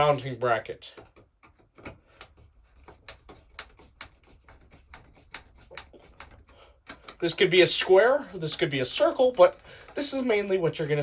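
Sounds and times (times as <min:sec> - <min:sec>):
faint clicks and taps: 0:00.9 - 0:07.4.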